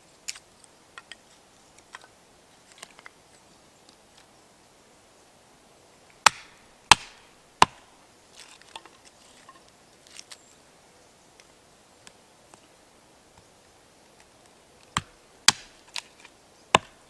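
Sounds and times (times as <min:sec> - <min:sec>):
axe strikes chopping firewood: 0:06.2 - 0:07.9, 0:15.0 - 0:16.0, 0:16.8 - 0:17.0.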